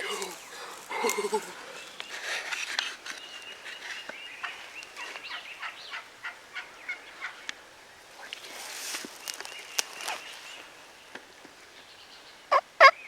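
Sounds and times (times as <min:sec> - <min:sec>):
turkey calling: 0:12.5 - 0:13.0.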